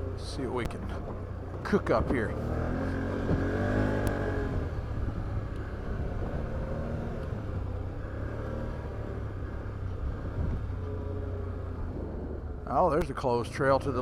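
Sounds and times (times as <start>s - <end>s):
atv engine rumbling: 0.0s - 14.0s.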